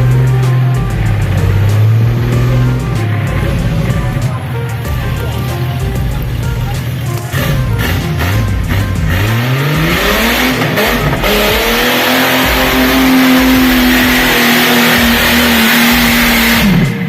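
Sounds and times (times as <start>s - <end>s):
vehicle engine revving: 0.0s - 17.0s.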